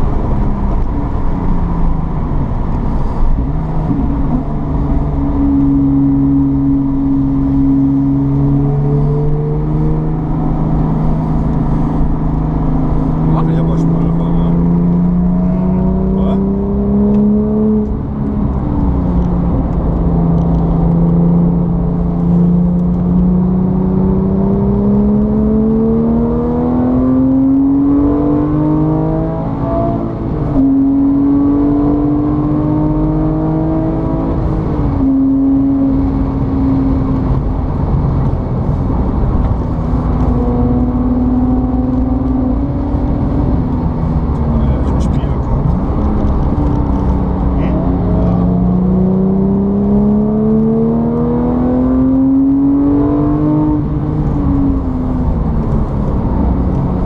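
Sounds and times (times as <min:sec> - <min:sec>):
vehicle engine running: 0:00.0 - 0:23.9, 0:34.1 - 0:51.1, 0:53.6 - 0:57.0.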